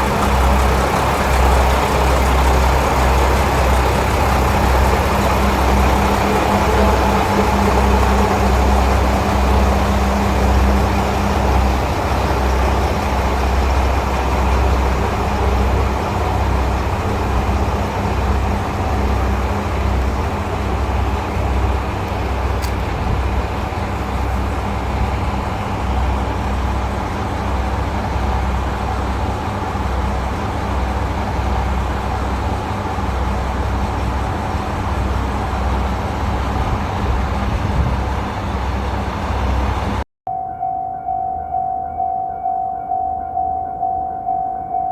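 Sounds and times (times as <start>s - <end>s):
hum: 0.0s - 25.6s
train diesel engine rumbling: 0.0s - 44.9s.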